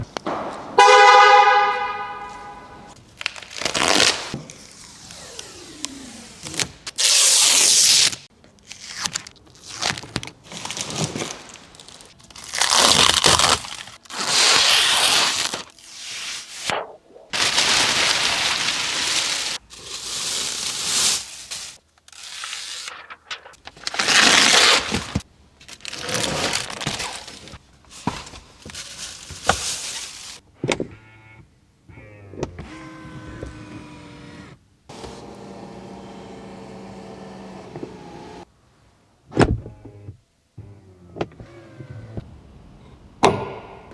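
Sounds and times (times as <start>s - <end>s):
plastic wrapping crinkling: 3.0s - 5.4s, 6.3s - 16.7s, 17.3s - 30.4s.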